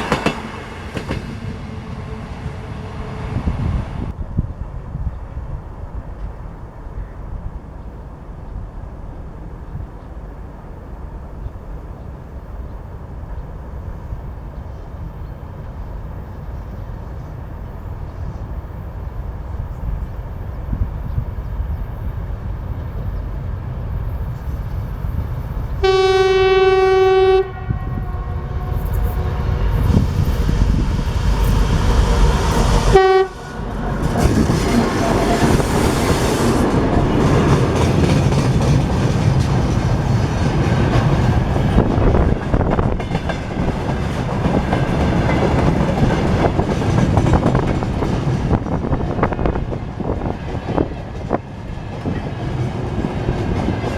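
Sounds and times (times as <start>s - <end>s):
diesel locomotive rumble: 16.0s - 53.9s
train horn: 25.8s - 30.1s, 31.8s - 36.2s.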